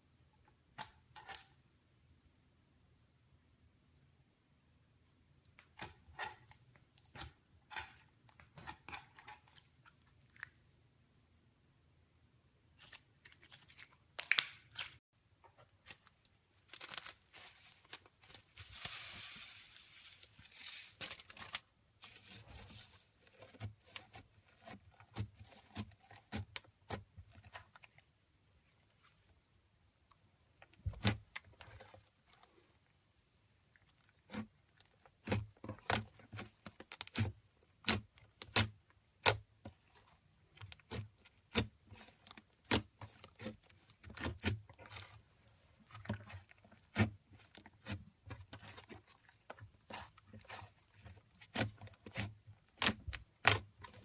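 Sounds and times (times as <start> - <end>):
slime crackling and tearing: 45.9 - 54.0.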